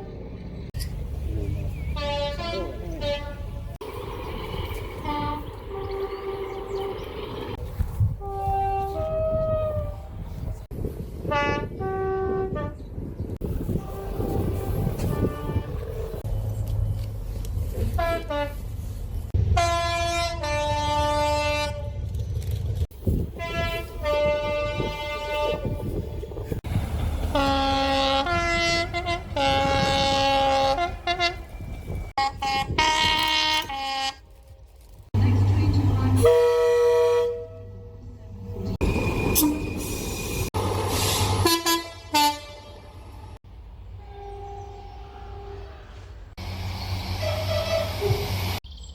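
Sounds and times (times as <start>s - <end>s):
low train rumble: 0.0s - 48.9s
two-tone train horn: 2.0s - 3.7s, 5.0s - 6.9s, 8.2s - 10.3s, 11.3s - 12.8s, 13.7s - 16.0s, 18.0s - 18.6s, 19.6s - 22.0s, 23.4s - 26.5s, 27.3s - 31.6s, 32.2s - 34.2s, 36.2s - 38.1s, 41.3s - 43.2s, 44.0s - 46.1s, 47.2s - 48.2s
short train horn toots: 8.2s - 10.2s, 13.8s - 15.9s, 41.2s - 43.0s, 44.0s - 46.1s, 47.2s - 48.2s.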